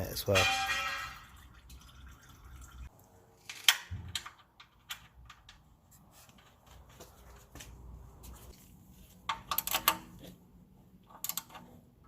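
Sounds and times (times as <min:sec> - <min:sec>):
metal parts and tools clicking: 0:09.2 - 0:10.4, 0:11.0 - 0:11.8.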